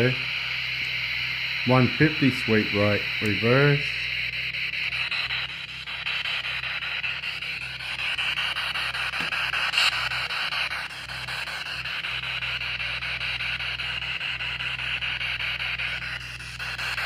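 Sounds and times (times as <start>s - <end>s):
chopped radio static hiss: 0.0s - 17.0s.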